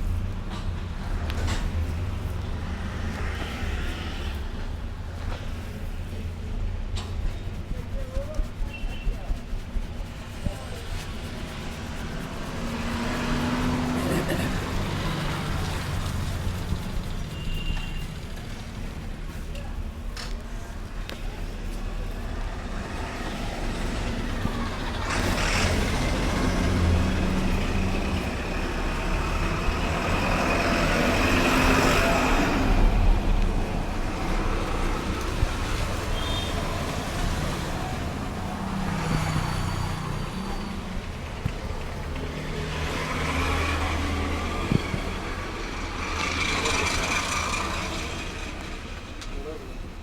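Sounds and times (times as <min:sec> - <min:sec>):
road traffic passing: 0:00.0 - 0:50.0.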